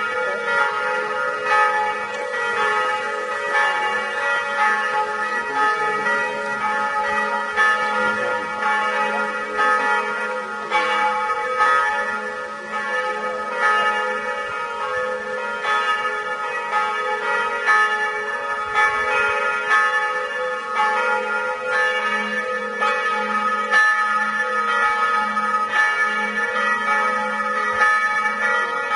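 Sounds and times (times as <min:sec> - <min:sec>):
church bells pealing: 0:00.0 - 0:28.9.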